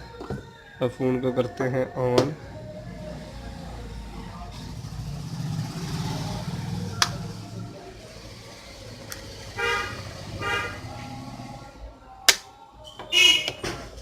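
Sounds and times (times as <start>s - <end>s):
faint traffic noise: 0.0s - 14.0s
vehicle horn honks: 9.6s - 11.0s, 13.1s - 13.6s.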